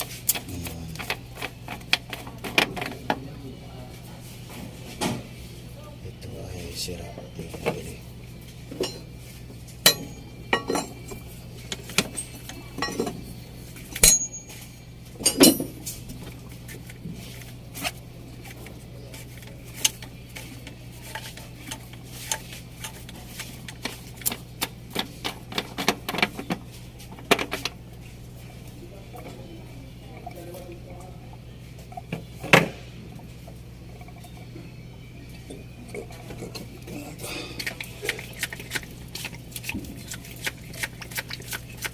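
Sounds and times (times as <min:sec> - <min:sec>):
steady low hum: 0:00.0 - 0:41.9
metal tools clinking and knocking: 0:08.7 - 0:09.1, 0:09.8 - 0:13.2, 0:14.0 - 0:16.0.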